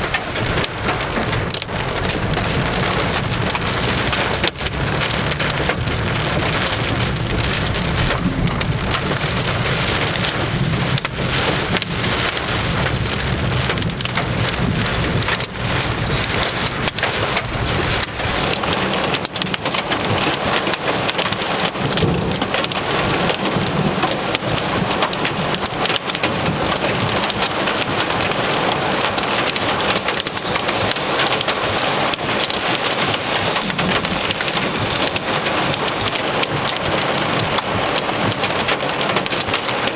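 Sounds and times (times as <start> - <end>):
heavy rain pouring: 0.0 - 39.9
low rumble: 0.3 - 19.8.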